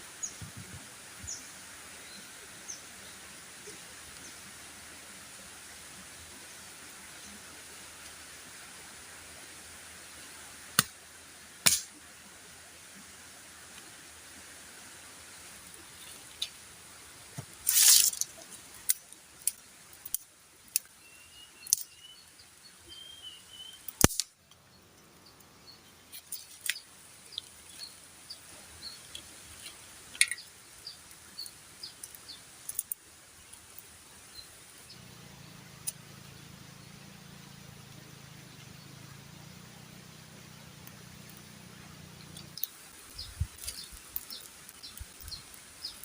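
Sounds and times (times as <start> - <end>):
sharp snap: 10.8 - 11.0, 11.6 - 12.0, 24.0 - 24.4
faint bird chirps: 20.8 - 24.0.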